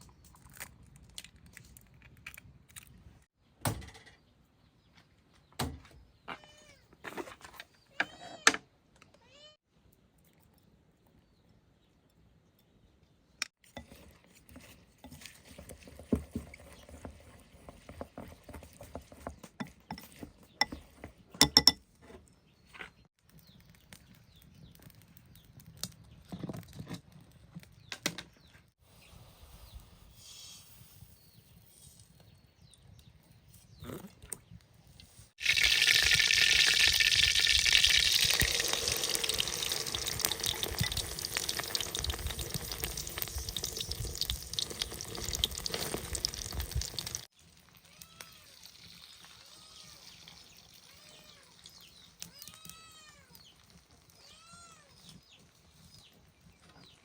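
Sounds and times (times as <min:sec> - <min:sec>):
water pouring: 0:35.4 - 0:47.3.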